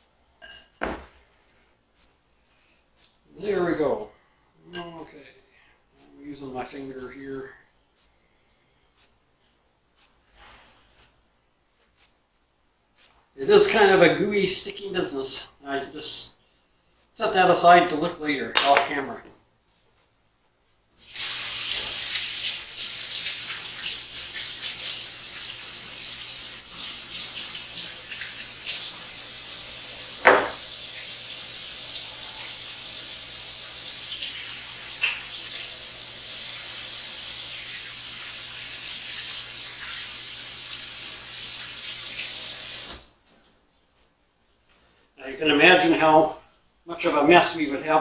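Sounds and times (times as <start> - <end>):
tap water running into sink: 21.0 - 43.0.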